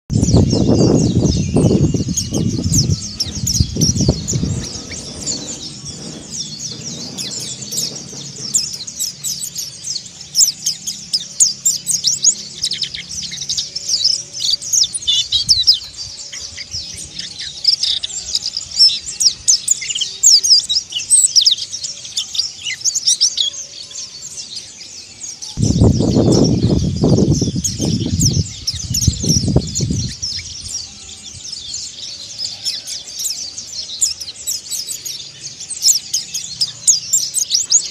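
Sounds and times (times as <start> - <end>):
low rumbling bursts: 0.1 - 9.3, 25.6 - 30.7
bird twittering chatter: 0.1 - 37.9.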